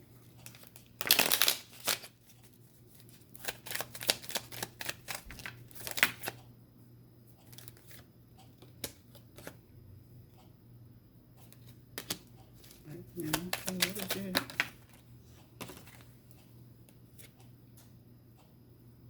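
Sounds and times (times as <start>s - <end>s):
cards being shuffled: 0.4s - 6.4s, 11.5s - 15.0s, 15.6s - 16.1s.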